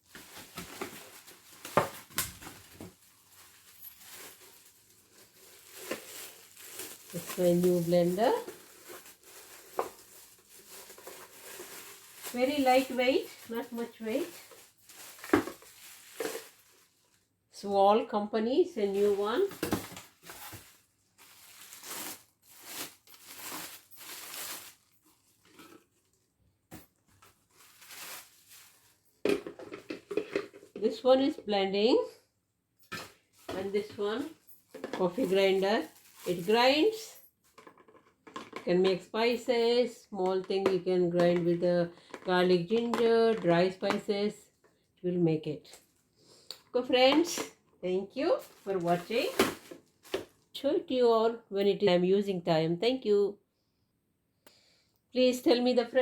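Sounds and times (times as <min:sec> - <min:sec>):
packaging rustling: 0:00.0 - 0:17.2, 0:18.9 - 0:26.2, 0:26.8 - 0:30.8, 0:32.9 - 0:38.1, 0:48.4 - 0:50.5.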